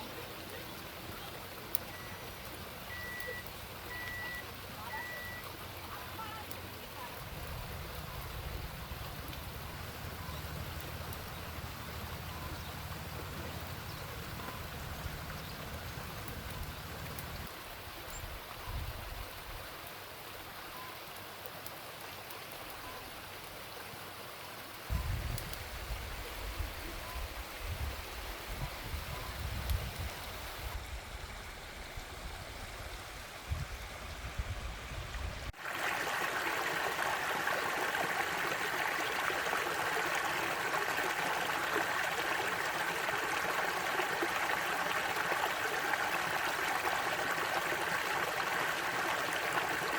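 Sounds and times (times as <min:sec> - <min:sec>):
stream water rushing: 0:00.0 - 0:25.0, 0:34.9 - 0:49.9.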